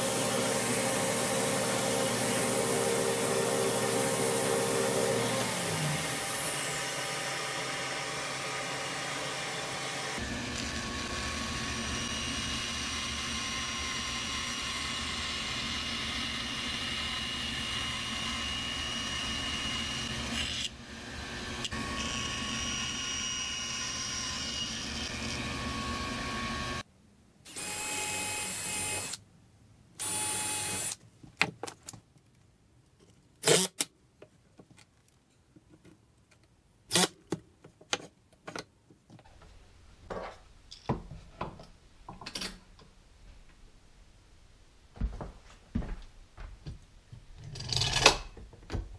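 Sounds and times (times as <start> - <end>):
power tool running: 0.0 - 26.8.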